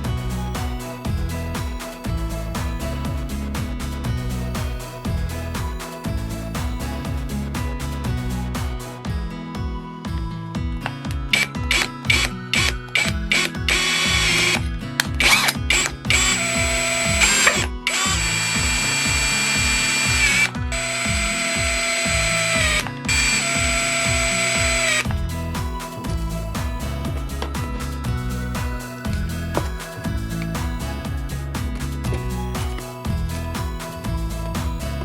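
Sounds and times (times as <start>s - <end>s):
music with steady beat: 0.0s - 35.0s
plucked guitar-like melody: 0.0s - 35.0s
power drill whining: 11.4s - 35.0s.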